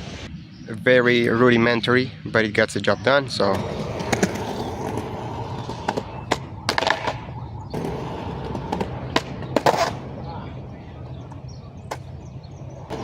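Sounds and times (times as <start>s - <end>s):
skateboard wheels rolling on concrete: 2.4s - 13.0s
skateboard clacking on ground: 5.6s - 10.2s, 11.0s - 12.2s.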